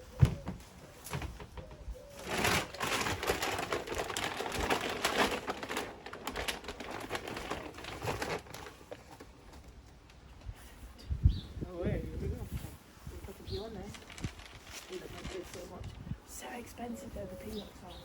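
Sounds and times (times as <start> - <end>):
peanuts rattling into feeder: 2.2 - 8.7.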